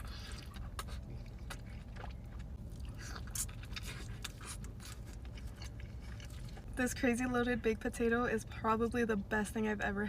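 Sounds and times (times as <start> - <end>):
chewing food: 0.0 - 6.7.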